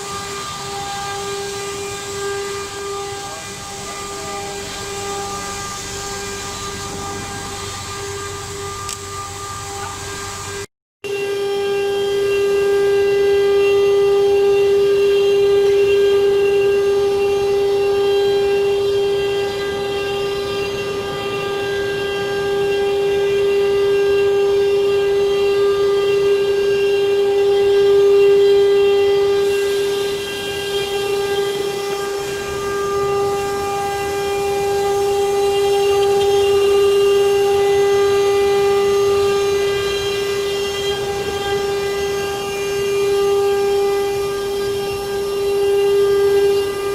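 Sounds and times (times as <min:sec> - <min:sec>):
wood router spindle whining: 0:00.0 - 0:46.9.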